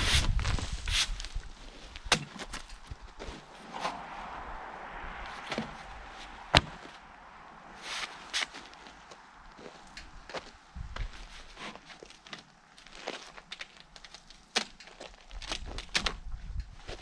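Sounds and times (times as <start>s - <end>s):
sharp knocks and clunks: 6.5s - 6.9s.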